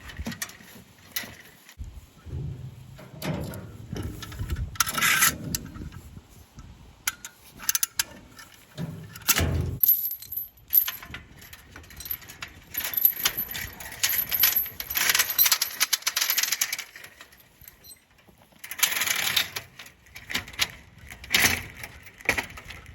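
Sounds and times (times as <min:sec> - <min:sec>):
wire fence rattling and clinking: 0:00.0 - 0:06.1, 0:07.2 - 0:22.9
dull low thuds: 0:01.8 - 0:03.0.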